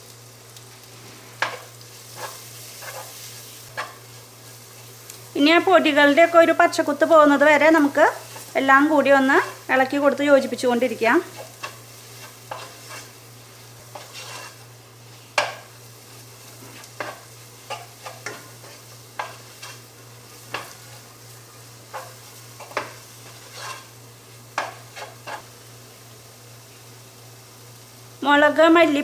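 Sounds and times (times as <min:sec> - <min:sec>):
faint sizzle: 0:00.0 - 0:29.0
utensil scraping a pan: 0:01.0 - 0:04.0, 0:11.3 - 0:14.7, 0:16.4 - 0:21.0, 0:21.9 - 0:24.0, 0:24.6 - 0:25.5.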